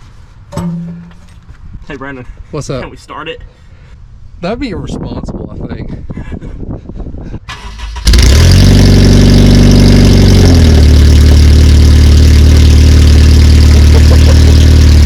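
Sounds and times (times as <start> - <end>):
loud car engine starting and idling: 7.5 - 15.0.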